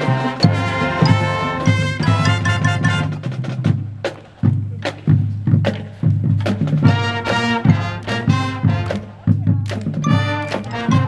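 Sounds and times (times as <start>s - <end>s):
loud brass chords: 0.0s - 3.4s, 6.8s - 9.2s, 10.0s - 11.0s.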